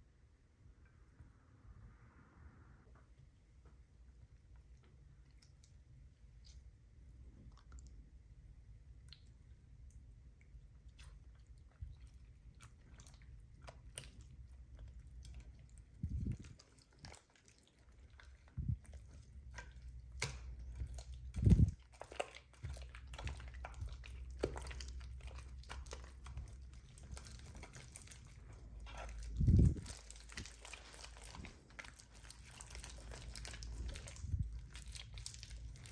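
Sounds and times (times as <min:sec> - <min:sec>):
slime squished by hand: 0:10.9 - 0:35.9.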